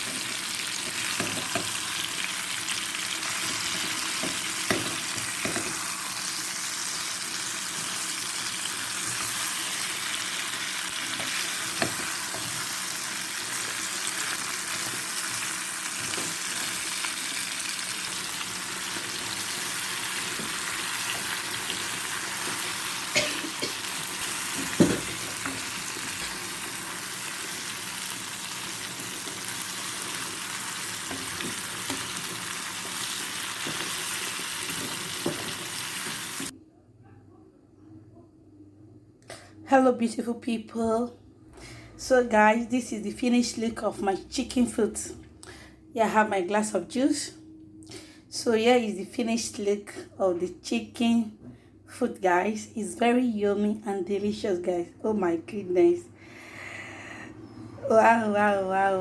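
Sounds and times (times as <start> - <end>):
meat sizzling in a pan: 0.0 - 36.5.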